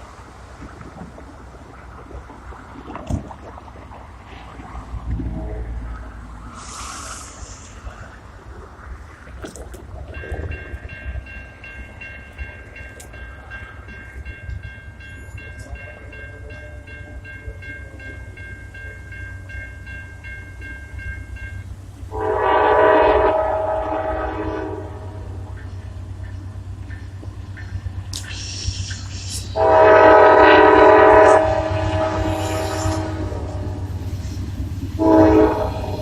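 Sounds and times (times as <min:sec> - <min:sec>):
diesel locomotive rumbling: 0:00.0 - 0:36.0
locomotive bell ringing: 0:10.1 - 0:28.1, 0:29.6 - 0:36.0
locomotive air horn blast: 0:22.1 - 0:25.4, 0:28.3 - 0:34.2, 0:35.0 - 0:36.0.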